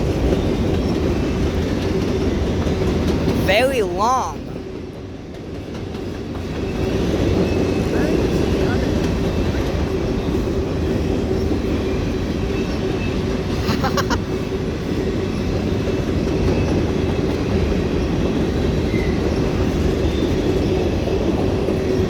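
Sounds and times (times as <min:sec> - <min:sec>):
freight train rumbling past: 0:04.7 - 0:22.0.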